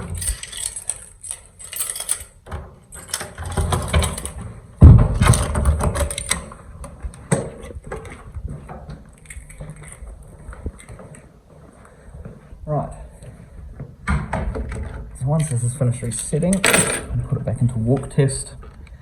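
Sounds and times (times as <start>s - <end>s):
clicks knocks and rustling: 0.0s - 11.3s
loud deep thump: 4.8s - 5.6s.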